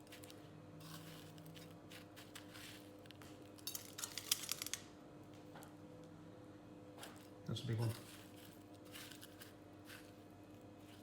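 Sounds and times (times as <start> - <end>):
food clicking on metal rack: 3.6 - 4.9.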